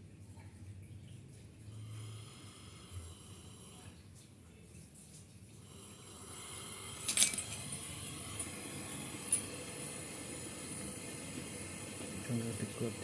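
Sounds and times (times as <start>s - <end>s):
gas hissing through pipework: 1.6s - 4.1s, 5.6s - 13.0s.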